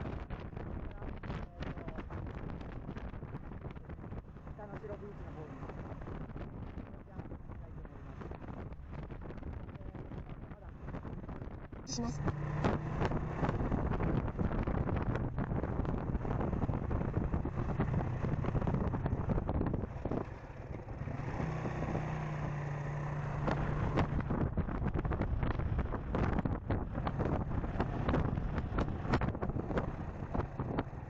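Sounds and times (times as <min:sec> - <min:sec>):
motorcycle engine running: 0:00.0 - 0:31.0
wind buffeting microphone: 0:00.0 - 0:31.0.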